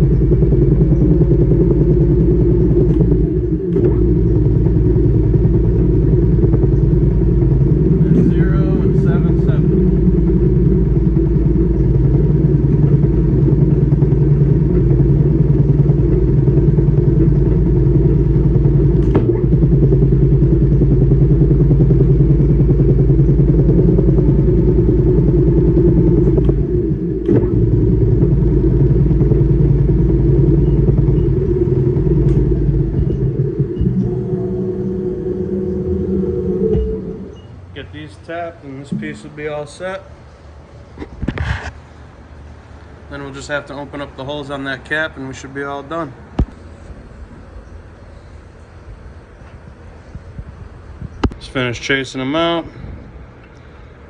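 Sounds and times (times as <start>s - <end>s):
machine tool humming: 0.0s - 40.7s.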